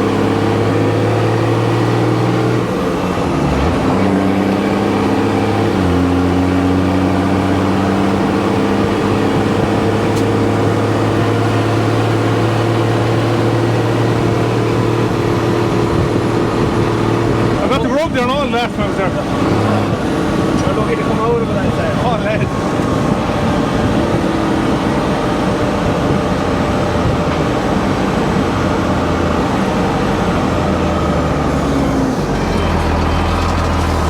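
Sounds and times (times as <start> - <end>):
vehicle engine running: 0.0 - 34.0.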